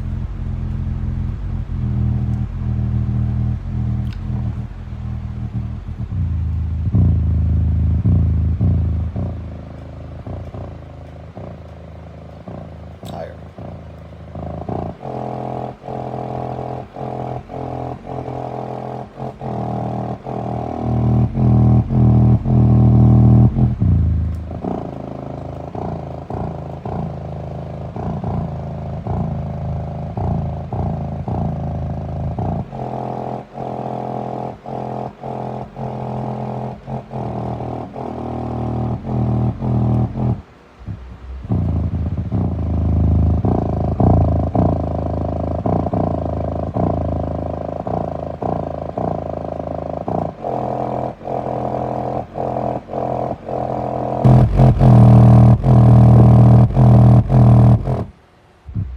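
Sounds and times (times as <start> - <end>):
bass-heavy music through subwoofer: 0.0 - 58.1, 58.7 - 58.9.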